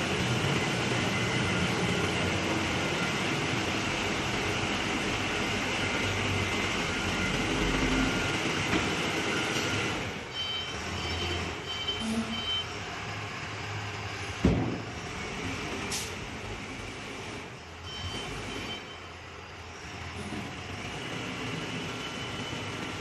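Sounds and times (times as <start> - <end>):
concrete mixer truck running: 0.0 - 23.0
high reversing beeps: 0.4 - 12.8, 17.8 - 19.6, 21.9 - 22.8
thump: 14.4 - 14.8.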